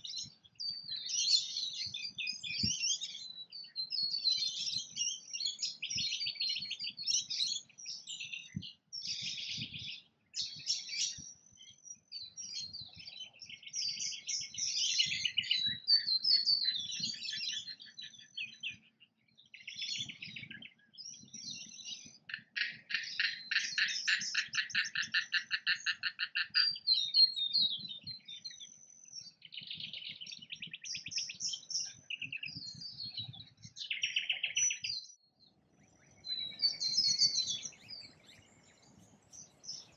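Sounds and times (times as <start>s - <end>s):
birds chirping: 0.0s - 39.9s
fast rattling bird call: 22.3s - 26.6s.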